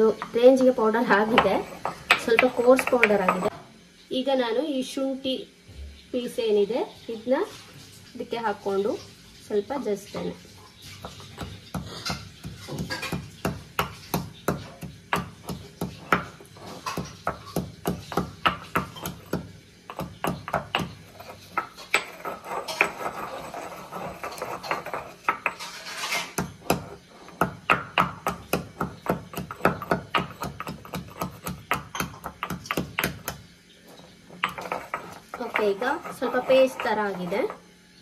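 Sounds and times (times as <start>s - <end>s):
pestle pounding in a mortar: 0.0s - 3.5s, 10.9s - 37.6s
pestle grinding and scraping: 0.0s - 3.6s, 9.8s - 37.6s.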